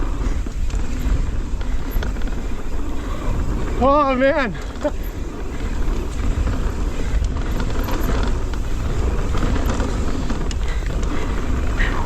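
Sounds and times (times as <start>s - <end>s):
tyre noise on dirt trail: 0.0s - 12.0s
wind buffeting microphone: 0.0s - 12.0s.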